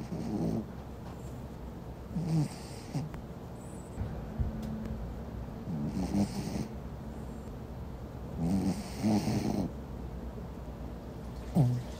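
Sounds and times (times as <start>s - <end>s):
dog snoring: 0.0s - 0.7s, 2.1s - 3.2s, 5.7s - 6.7s, 8.4s - 9.8s, 11.5s - 11.9s.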